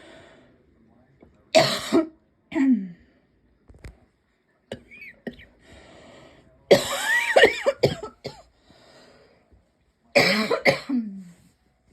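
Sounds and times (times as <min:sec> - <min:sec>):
person coughing: 0:01.6 - 0:02.9, 0:06.7 - 0:08.5, 0:10.2 - 0:11.3.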